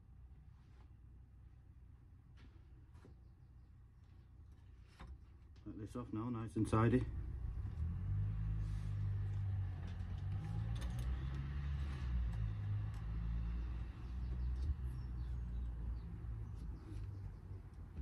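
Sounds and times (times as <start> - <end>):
low engine rumble: 5.6 - 18.0.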